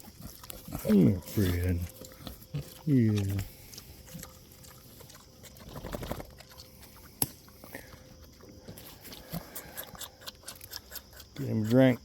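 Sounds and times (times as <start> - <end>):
pig grunting: 0.0 - 4.4.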